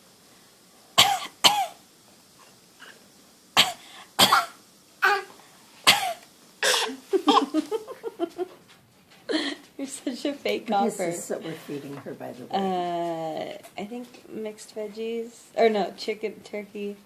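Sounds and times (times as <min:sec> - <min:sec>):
person fake coughing: 0:05.9 - 0:07.0.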